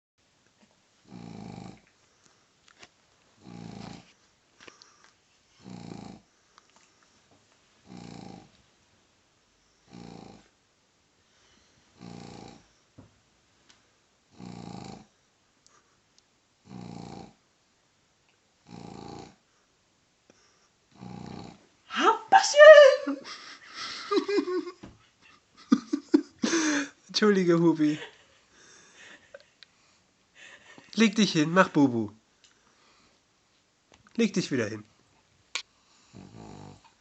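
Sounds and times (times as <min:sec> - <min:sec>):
dog snoring: 0:01.0 - 0:01.9, 0:03.4 - 0:04.2, 0:05.6 - 0:06.3, 0:07.8 - 0:08.6, 0:09.8 - 0:10.6, 0:11.9 - 0:12.7, 0:14.3 - 0:15.2, 0:16.6 - 0:17.4, 0:18.6 - 0:19.4, 0:20.9 - 0:21.6, 0:35.8 - 0:37.0
soft breathing: 0:03.8 - 0:07.4, 0:11.2 - 0:13.0, 0:19.5 - 0:20.8, 0:26.4 - 0:27.0, 0:28.0 - 0:31.0, 0:32.5 - 0:33.4.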